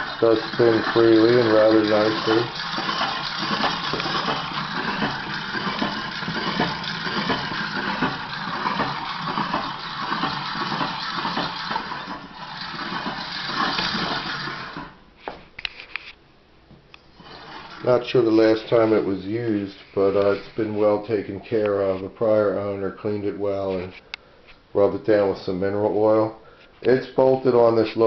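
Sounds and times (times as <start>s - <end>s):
meat grinder wheel whirring rattle: 0.0s - 15.0s, 17.2s - 19.2s.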